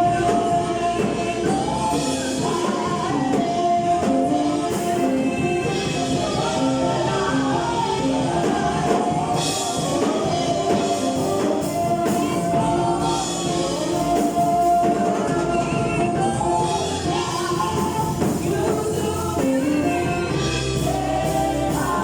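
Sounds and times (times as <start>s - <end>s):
choir singing: 0.0s - 22.0s
drums and cymbals: 0.0s - 22.0s.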